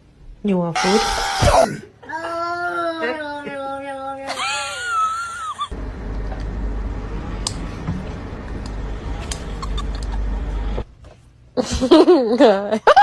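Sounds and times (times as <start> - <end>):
low rumbling noise: 5.7 - 11.0.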